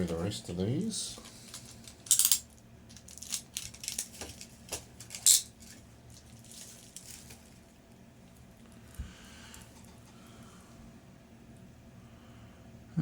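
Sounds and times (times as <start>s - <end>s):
wristwatches clinking and rattling: 1.8s - 7.3s.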